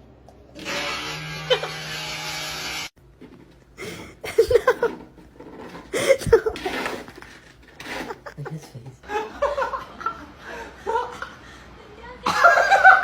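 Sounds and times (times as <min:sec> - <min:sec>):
person laughing: 0:03.8 - 0:05.0, 0:06.0 - 0:06.8, 0:07.9 - 0:09.8.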